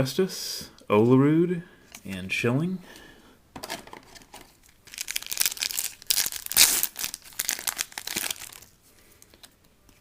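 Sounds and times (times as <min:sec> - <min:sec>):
wrapper tearing and crinkling: 0:04.8 - 0:08.8.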